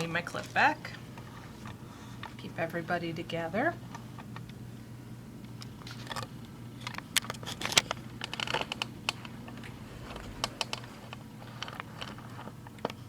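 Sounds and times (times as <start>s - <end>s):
low steady hum: 8.6s - 11.8s.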